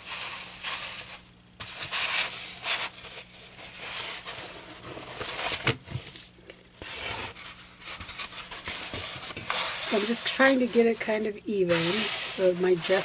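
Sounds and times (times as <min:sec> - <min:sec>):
fabric rustling on board: 0:07.4 - 0:13.0.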